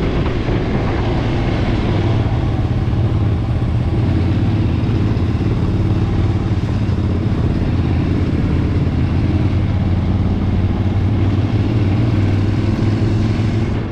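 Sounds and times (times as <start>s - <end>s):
motorcycle engine running steadily: 0.0s - 13.9s.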